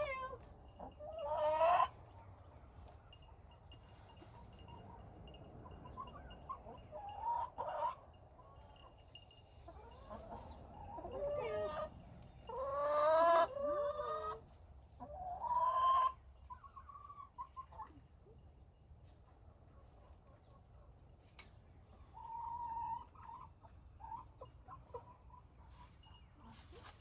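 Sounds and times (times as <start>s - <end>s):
chicken squawking and clucking: 0.0s - 2.0s, 5.9s - 8.5s, 9.7s - 11.9s, 12.5s - 17.9s, 22.0s - 26.9s.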